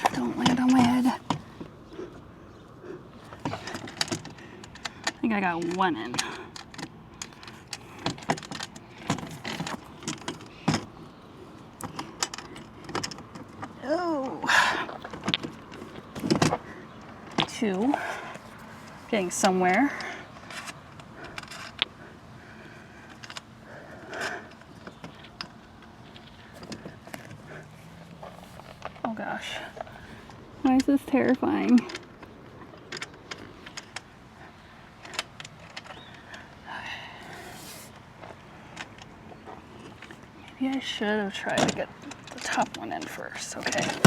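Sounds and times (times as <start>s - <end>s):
metal bolts clicking and scraping: 3.2s - 13.8s, 14.9s - 22.2s, 37.3s - 44.0s.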